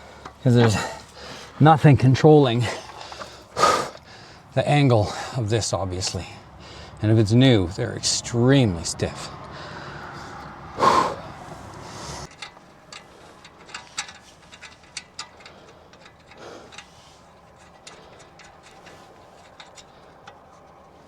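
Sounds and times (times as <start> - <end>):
clicks and taps of tools: 12.3 - 16.9.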